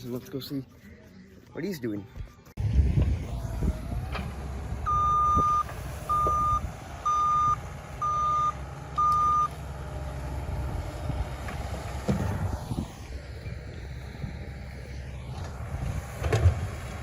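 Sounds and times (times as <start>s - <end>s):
engine rumbling: 2.1s - 17.0s
vehicle reversing alarm beeping: 4.8s - 9.7s.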